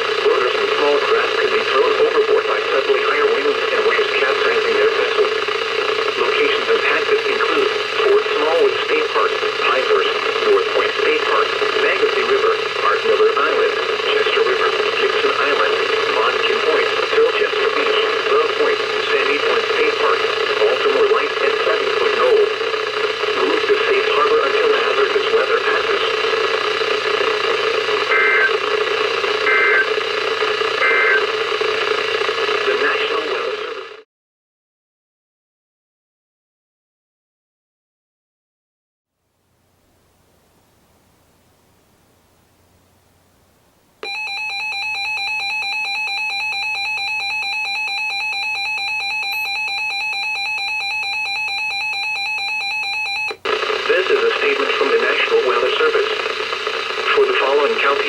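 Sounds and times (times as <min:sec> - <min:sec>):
radio static hiss: 0:00.0 - 0:34.0, 0:53.3 - 0:58.0
steady electronic alarm tone: 0:00.0 - 0:34.0, 0:44.0 - 0:58.0.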